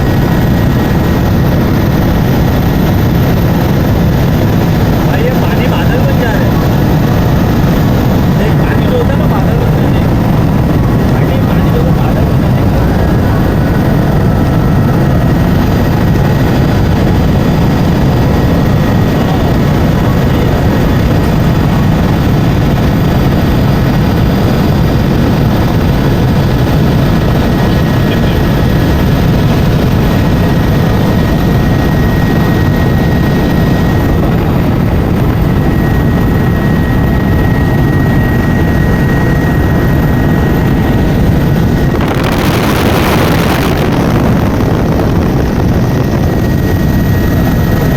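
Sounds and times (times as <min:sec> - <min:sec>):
helicopter rotor and engine: 0:00.0 - 0:47.9
high whine: 0:00.0 - 0:47.9.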